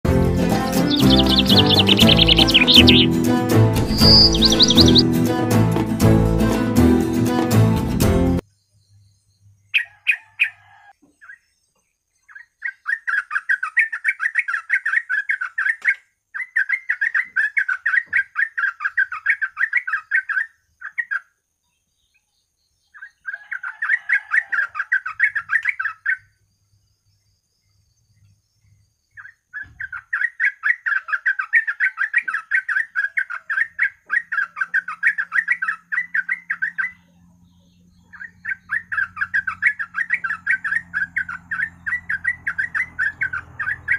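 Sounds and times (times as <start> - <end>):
bulbul singing rolling chatter: 0.5 - 5.0, 29.1 - 43.9.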